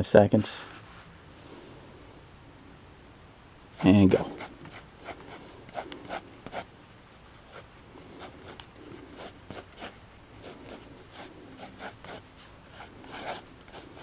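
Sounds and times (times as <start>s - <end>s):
drawing tool scratching on paper: 3.8s - 6.7s, 8.2s - 14.0s.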